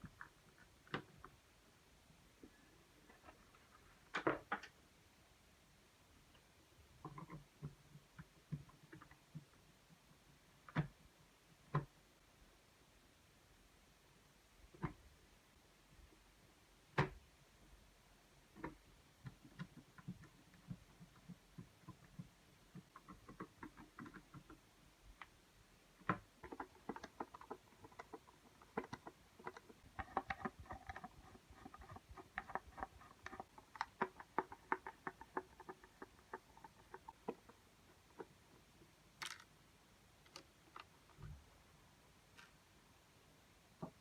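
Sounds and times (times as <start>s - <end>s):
plastic keyboard parts clicking: 39.2s - 39.5s.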